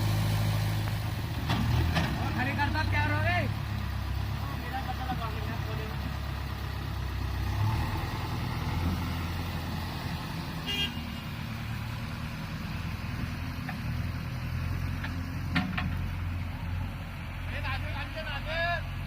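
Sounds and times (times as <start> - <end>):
diesel engine running: 0.0 - 19.0.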